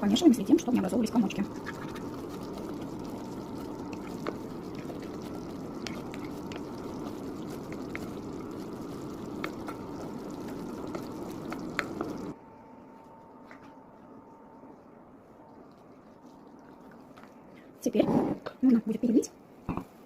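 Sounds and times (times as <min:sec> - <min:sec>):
spoon stirring thick mixture: 0:00.4 - 0:12.3.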